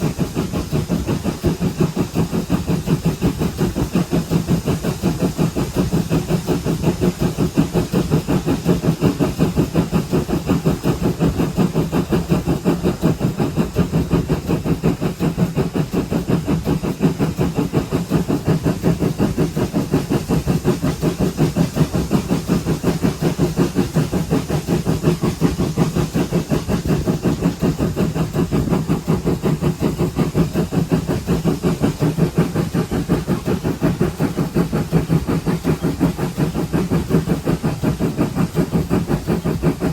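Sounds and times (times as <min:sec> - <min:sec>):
steam hissing: 0:00.0 - 0:39.9
steam locomotive exhaust beats: 0:00.0 - 0:39.9.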